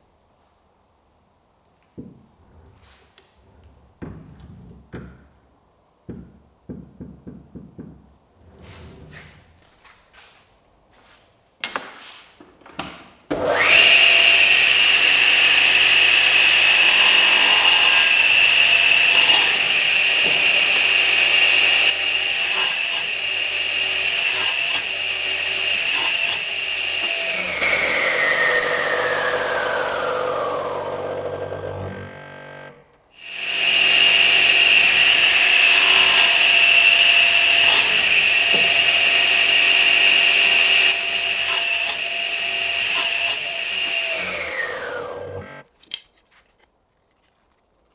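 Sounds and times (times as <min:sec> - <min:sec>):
power tool whining: 0:13.4 - 0:45.6.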